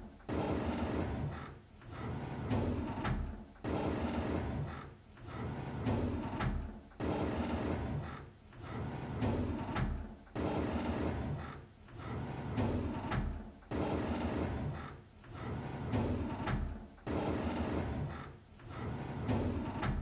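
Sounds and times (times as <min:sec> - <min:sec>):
drawer sliding open: 0:12.0 - 0:20.0.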